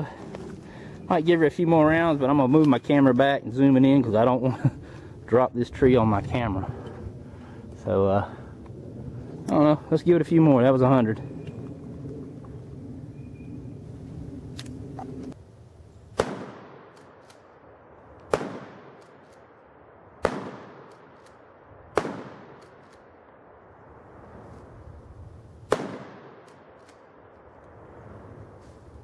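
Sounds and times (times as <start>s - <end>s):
shotgun shots with echo: 16.2s - 17.4s, 18.3s - 19.2s, 20.2s - 21.2s, 21.9s - 22.9s, 25.7s - 26.8s.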